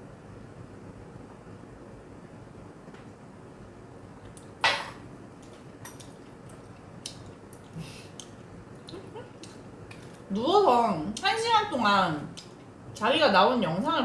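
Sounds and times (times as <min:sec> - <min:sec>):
chewing clicks and smacks: 0:05.4 - 0:10.2, 0:12.4 - 0:12.7.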